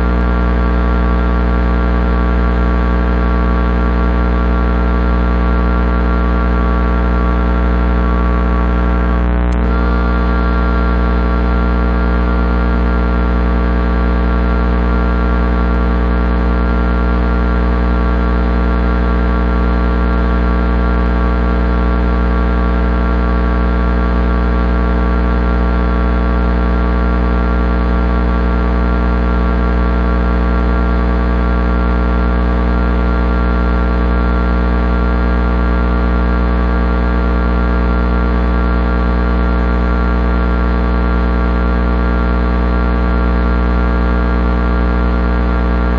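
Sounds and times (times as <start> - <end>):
electric transformer humming: 6.7 - 13.4.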